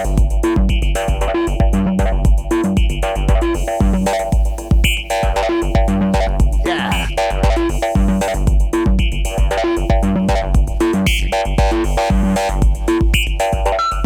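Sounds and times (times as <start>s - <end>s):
drum machine kick beat: 0.0s - 14.0s
synthesizer chord stabs and bass: 0.0s - 14.0s.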